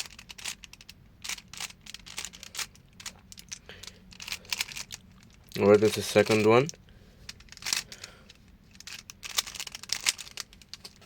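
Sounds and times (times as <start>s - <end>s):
puzzle cube clicking: 0.0s - 5.6s, 7.3s - 8.1s, 8.7s - 11.0s.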